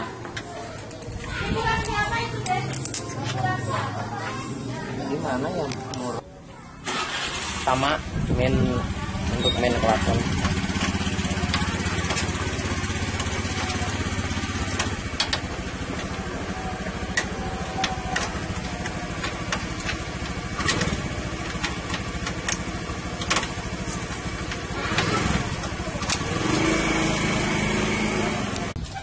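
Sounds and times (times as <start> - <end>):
engine running: 6.9 - 29.0.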